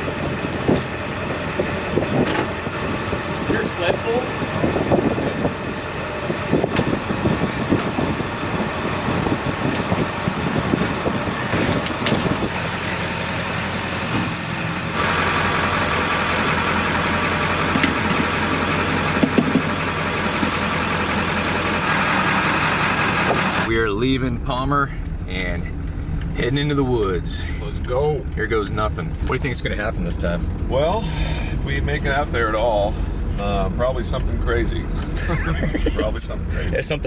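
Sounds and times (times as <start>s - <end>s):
road noise: 0.0s - 37.0s
truck engine hum: 0.0s - 37.0s.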